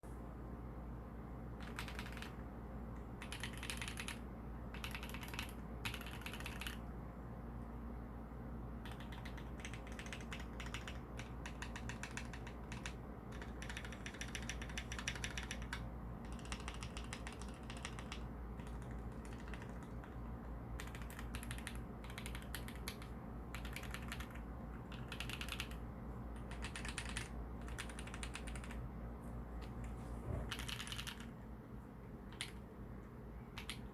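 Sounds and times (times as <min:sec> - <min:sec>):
mechanical keyboard typing: 0:01.6 - 0:02.4, 0:03.2 - 0:06.8, 0:08.8 - 0:20.2, 0:20.8 - 0:25.8, 0:26.4 - 0:28.8, 0:30.5 - 0:31.3, 0:32.3 - 0:32.7, 0:33.5 - 0:33.9.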